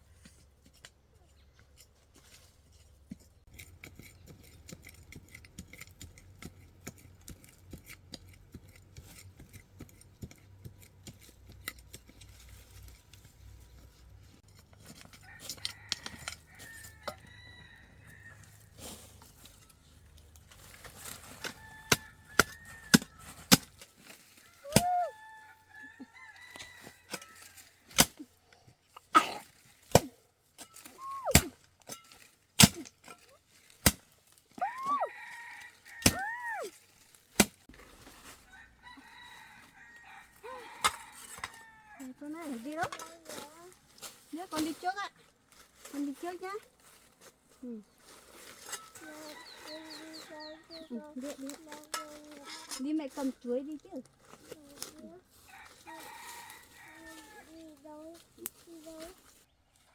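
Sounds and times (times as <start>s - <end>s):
digging tool chopping strikes: 21.4s - 23.9s, 24.6s - 25.0s, 27.9s - 28.2s, 29.8s - 34.1s, 37.4s - 37.7s.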